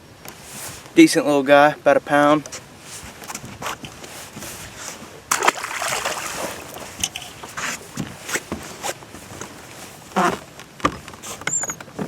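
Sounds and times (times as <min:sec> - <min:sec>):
splash into water: 0:05.3 - 0:07.0
water sloshing: 0:05.3 - 0:10.1.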